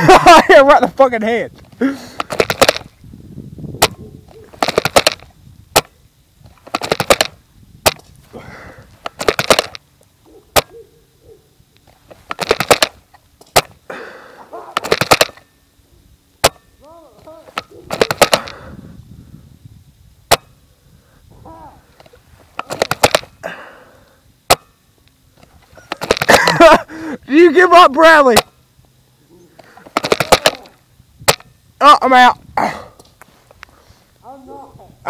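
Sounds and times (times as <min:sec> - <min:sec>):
airsoft gun shots: 0:02.2 - 0:02.9, 0:03.8 - 0:06.0, 0:06.6 - 0:08.0, 0:09.2 - 0:09.8, 0:10.5 - 0:10.8, 0:12.3 - 0:13.8, 0:14.8 - 0:15.5, 0:16.4 - 0:16.7, 0:17.6 - 0:18.6, 0:20.3 - 0:20.6, 0:22.6 - 0:23.3, 0:29.9 - 0:31.5.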